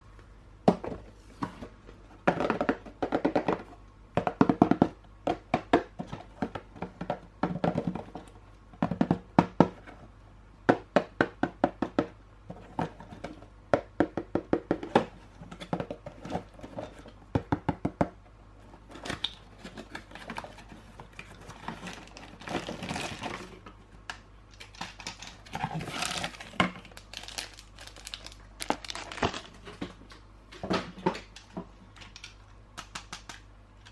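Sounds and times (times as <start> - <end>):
plastic toys clicking and knocking: 2.2 - 10.0, 18.9 - 33.9
packaging crinkling: 24.5 - 29.8.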